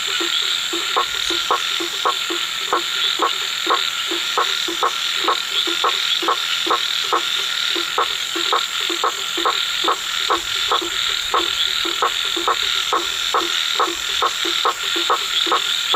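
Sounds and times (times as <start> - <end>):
frog croaking: 0.0 - 15.9.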